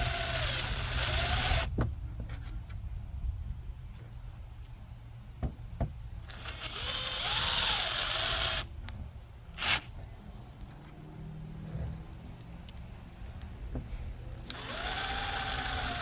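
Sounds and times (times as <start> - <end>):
cordless drill running: 0.0 - 1.7, 6.2 - 8.7, 9.6 - 9.8, 14.4 - 16.0.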